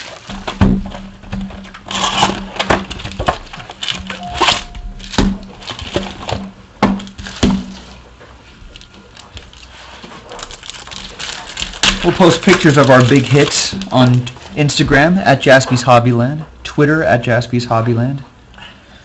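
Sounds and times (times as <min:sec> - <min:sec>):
steady low hum: 0:00.0 - 0:19.0
card packaging torn open: 0:08.7 - 0:14.4.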